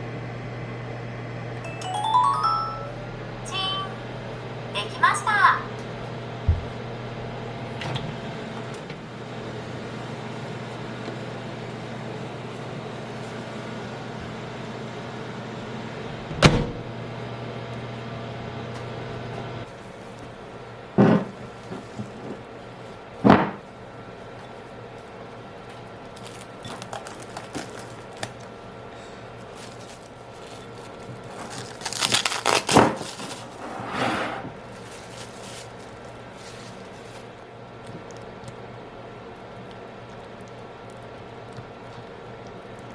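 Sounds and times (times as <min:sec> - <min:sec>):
microwave oven humming: 0:00.0 - 0:42.9
crinkling and rustling: 0:25.6 - 0:28.5, 0:29.4 - 0:33.7, 0:34.5 - 0:38.6.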